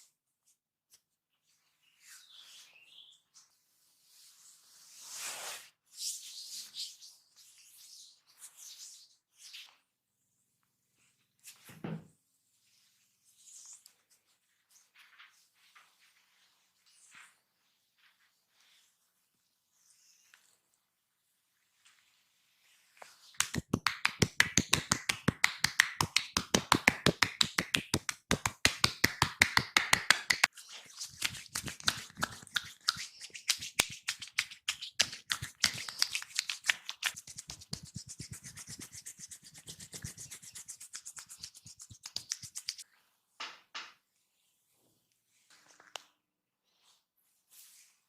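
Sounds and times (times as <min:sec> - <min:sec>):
hands rubbing skin: 0:23.0 - 0:42.8
hand slaps on body: 0:23.4 - 0:30.5, 0:31.2 - 0:38.3.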